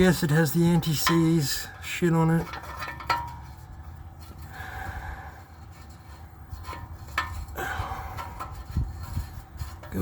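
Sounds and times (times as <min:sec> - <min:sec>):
man breathing heavily: 0:04.2 - 0:06.5, 0:07.3 - 0:09.3.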